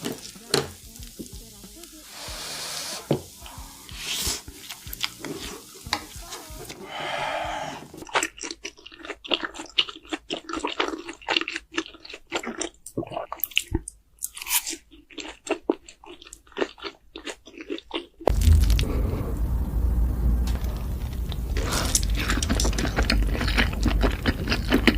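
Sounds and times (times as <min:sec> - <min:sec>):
chewing and biting food: 0:08.0 - 0:18.8, 0:21.6 - 0:24.9
low rumble: 0:18.3 - 0:24.9.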